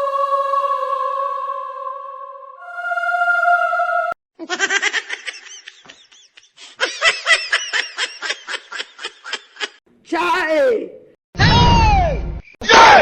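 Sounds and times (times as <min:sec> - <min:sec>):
person laughing: 0:04.4 - 0:09.8.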